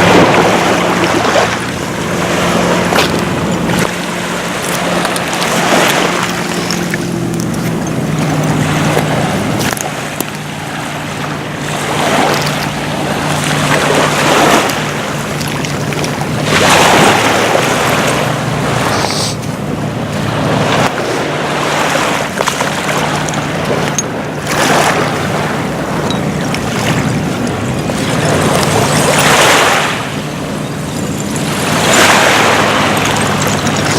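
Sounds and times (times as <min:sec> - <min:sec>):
low hum: 0:00.0 - 0:33.9
small waves washing on shore: 0:00.0 - 0:33.9
faint glass clinks: 0:26.0 - 0:26.3.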